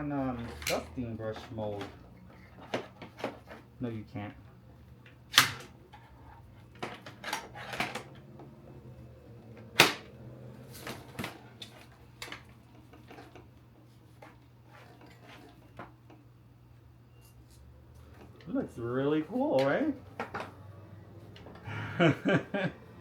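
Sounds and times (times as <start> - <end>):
plastic parts clicking and knocking: 0.4 - 3.6
sharp plastic snap: 5.3 - 5.7.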